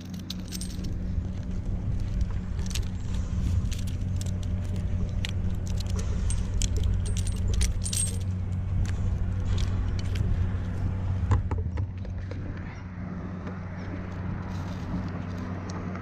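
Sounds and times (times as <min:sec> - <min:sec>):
metal hardware jingling: 0:00.0 - 0:10.3
low engine hum: 0:00.0 - 0:16.0.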